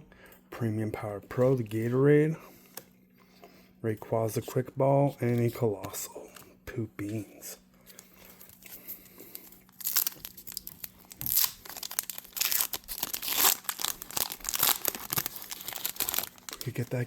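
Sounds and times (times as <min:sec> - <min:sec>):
foil wrapper crinkling and tearing: 0:07.9 - 0:17.0.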